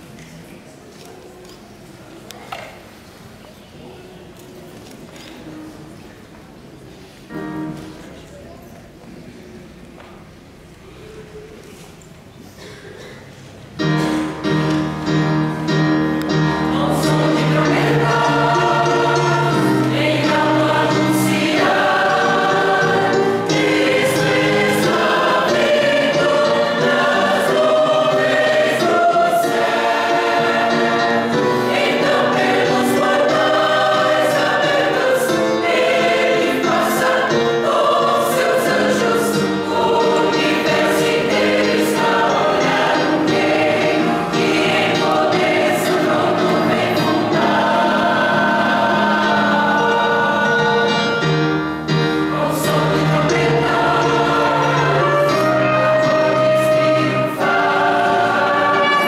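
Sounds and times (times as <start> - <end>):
choir singing a gospel hymn: 13.9 - 59.0.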